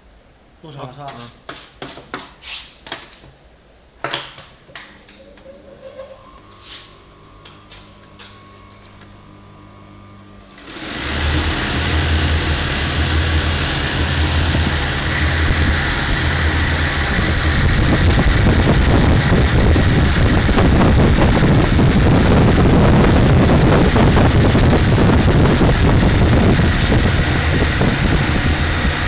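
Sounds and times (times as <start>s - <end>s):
sewing machine whirring: 10.4s - 29.0s
low steady hum: 11.4s - 29.0s.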